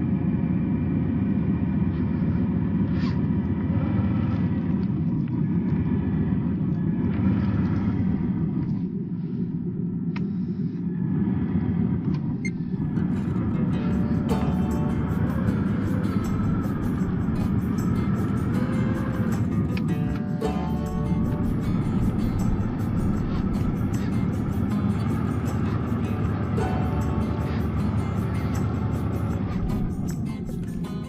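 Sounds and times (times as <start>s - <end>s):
electric motor and gears running: 11.5s - 31.0s.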